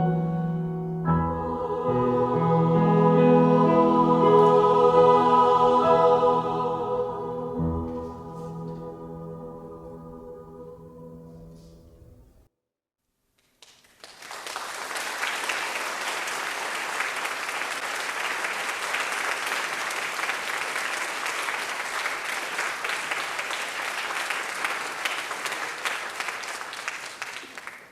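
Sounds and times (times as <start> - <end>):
audience applauding: 13.6 - 27.9.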